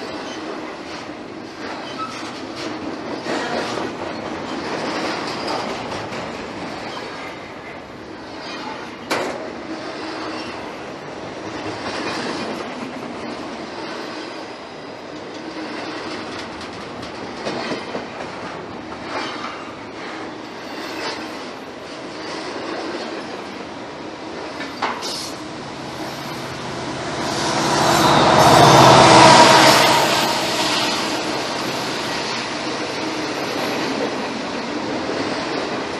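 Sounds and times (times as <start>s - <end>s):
freight train wheels on rails: 0.0s - 35.9s.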